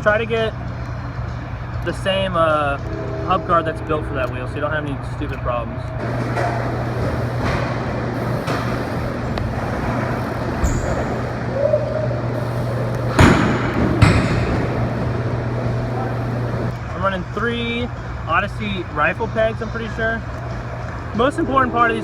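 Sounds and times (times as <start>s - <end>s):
steady low hum: 0.0s - 22.0s
background rumble: 0.5s - 16.8s.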